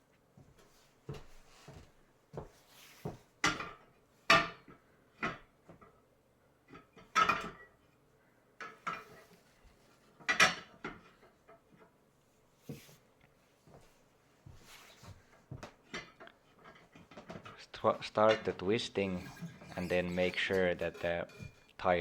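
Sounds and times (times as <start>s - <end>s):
metal clanks and scrapes on rim: 17.8s - 22.0s.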